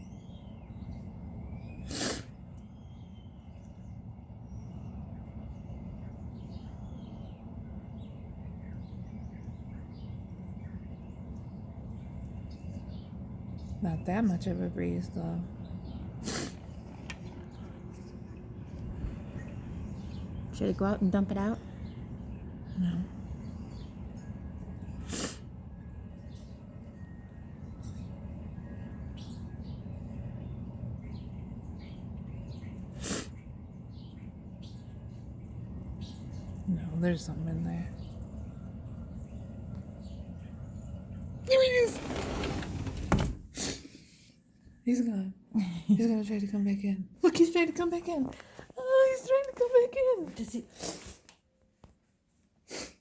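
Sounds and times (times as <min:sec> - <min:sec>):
small birds chirping: 0:00.0 - 0:51.2
low steady hum: 0:02.4 - 0:43.5
steady low rumble: 0:03.5 - 0:29.2
person sniffling: 0:52.7 - 0:53.0.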